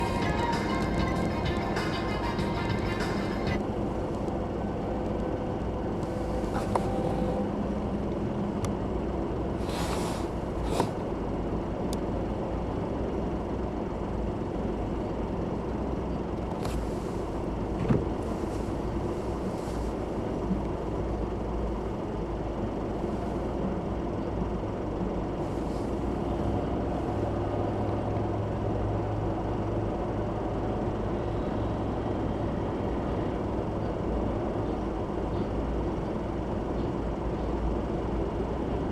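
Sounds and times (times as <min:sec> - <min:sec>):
train clanks: 0:00.0 - 0:04.3
train rumbling past: 0:00.0 - 0:10.8
air hiss: 0:09.6 - 0:10.9.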